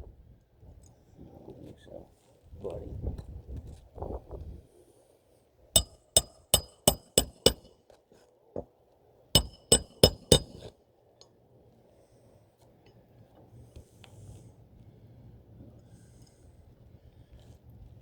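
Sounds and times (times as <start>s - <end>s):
ringing taps on hard object: 5.8s - 7.7s, 9.4s - 10.7s.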